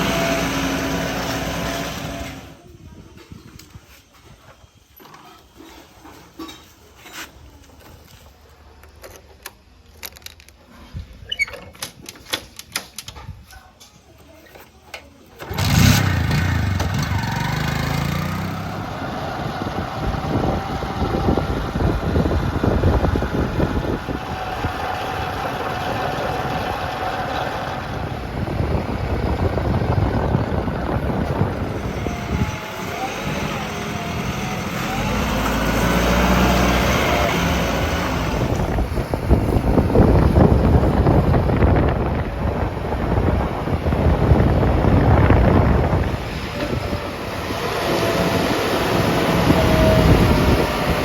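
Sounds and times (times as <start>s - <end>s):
heavy diesel engine running: 0.0s - 2.6s, 15.4s - 51.0s.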